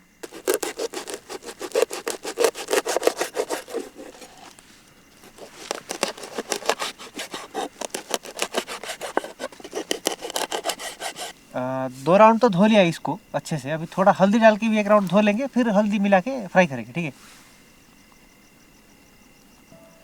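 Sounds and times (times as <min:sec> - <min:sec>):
dried fish being scrubbed: 0:00.2 - 0:11.4.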